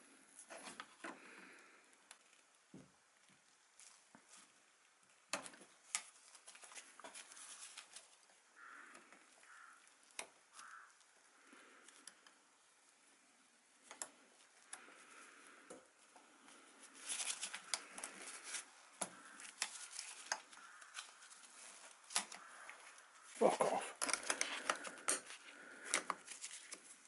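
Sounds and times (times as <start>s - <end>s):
soft rustles: 3.7s - 9.7s, 13.2s - 27.0s.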